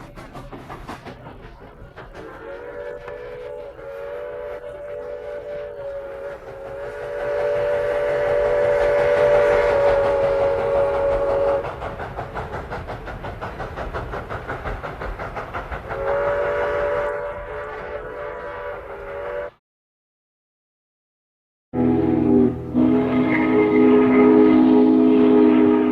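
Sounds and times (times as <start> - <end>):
running train rhythmic beat: 0.0 - 19.6, 21.8 - 25.9
train whistle blowing: 2.2 - 11.8, 15.9 - 19.6, 21.8 - 25.9.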